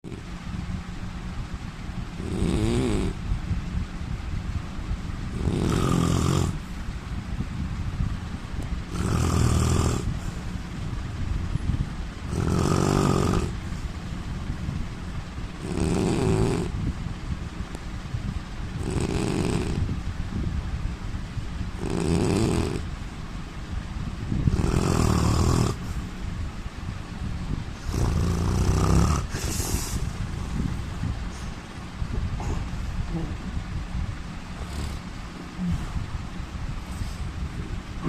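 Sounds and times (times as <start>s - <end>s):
man snoring: 2.2s - 3.2s, 5.3s - 6.6s, 8.9s - 10.4s, 12.3s - 13.6s, 15.6s - 16.8s, 18.8s - 19.9s, 21.8s - 22.8s, 24.5s - 25.8s, 27.8s - 30.2s, 34.6s - 36.0s.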